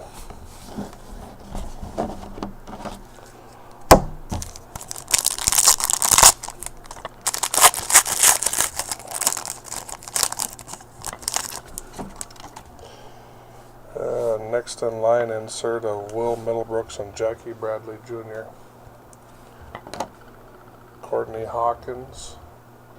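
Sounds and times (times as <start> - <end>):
wrapper tearing and crinkling: 4.3 - 12.7.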